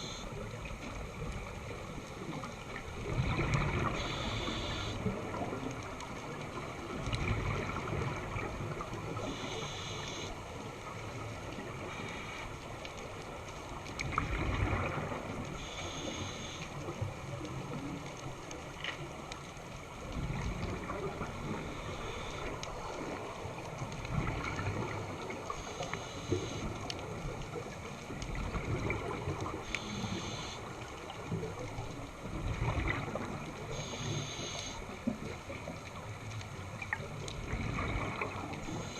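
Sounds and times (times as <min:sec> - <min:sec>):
regulator inhale hiss: 0:00.0 - 0:00.4, 0:03.9 - 0:05.1, 0:09.2 - 0:10.4, 0:15.6 - 0:16.8, 0:21.6 - 0:22.6, 0:25.5 - 0:26.8, 0:29.6 - 0:30.7, 0:33.7 - 0:34.9.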